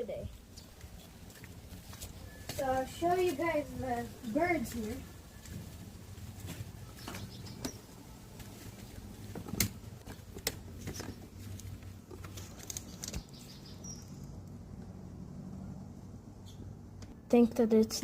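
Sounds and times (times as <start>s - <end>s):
light rustling: 0.5s - 14.3s.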